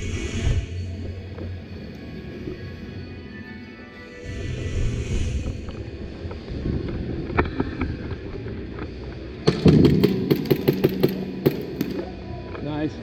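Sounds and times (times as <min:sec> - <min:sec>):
airsoft gunfire: 0:09.4 - 0:12.1.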